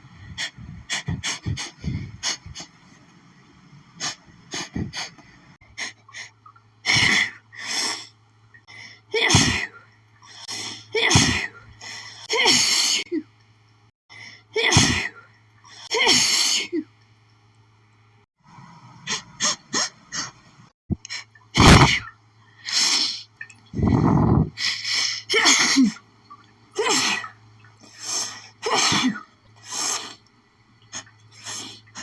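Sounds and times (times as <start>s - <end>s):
woman sneezing: 21.6s - 22.0s, 25.3s - 25.9s.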